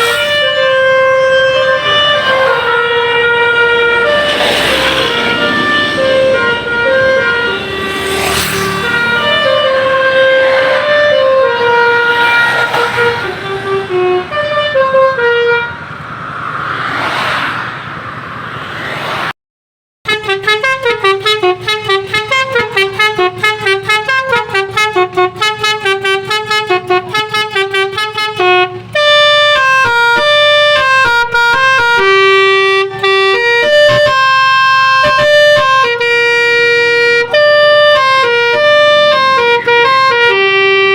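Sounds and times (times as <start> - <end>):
rushing noise: 0.0 - 14.4, 15.9 - 19.3
multi-note air horn tune: 0.0 - 15.8, 20.1 - 40.9.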